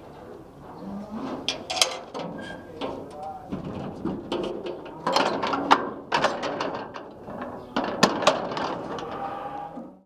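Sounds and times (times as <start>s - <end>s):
sharp knocks and clanks: 1.4s - 9.2s.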